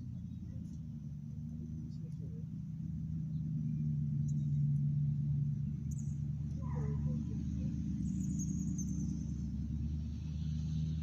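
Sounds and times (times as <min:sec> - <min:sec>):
engine drone: 0:00.0 - 0:11.0.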